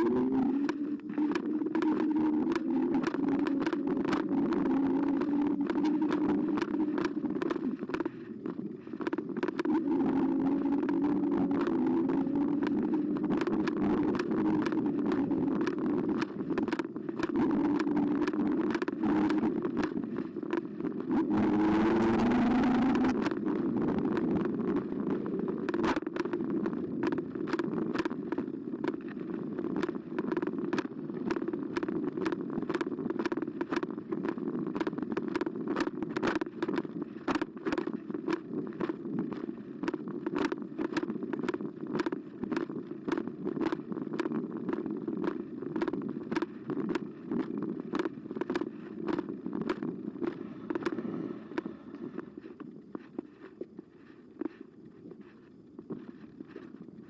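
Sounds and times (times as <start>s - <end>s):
electric motor whine: 0.0s - 28.1s
clicks and rattles from bumps: 0.0s - 57.0s
e-bike rolling hum: 0.0s - 57.0s.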